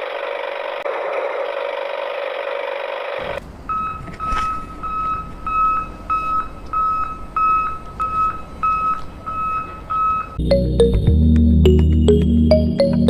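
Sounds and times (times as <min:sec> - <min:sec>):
reversing alarm beeping: 0:03.7 - 0:10.8.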